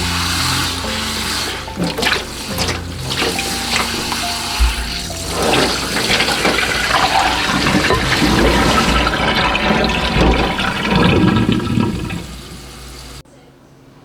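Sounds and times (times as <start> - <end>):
tap water running into sink: 0.0 - 13.2.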